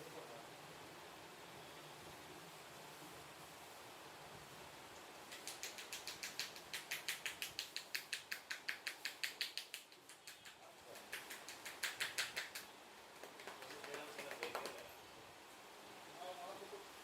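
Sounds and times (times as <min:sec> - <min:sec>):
rapid hand tapping on head: 0:05.3 - 0:14.9.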